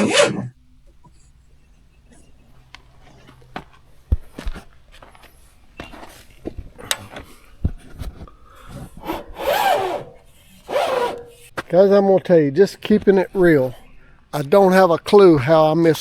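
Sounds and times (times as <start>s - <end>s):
hand tool scraping against mill: 0.0s - 11.9s.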